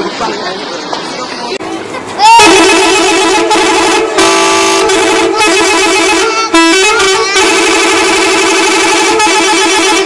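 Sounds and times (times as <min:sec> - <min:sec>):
bus musical air horn: 0:02.2 - 0:10.0.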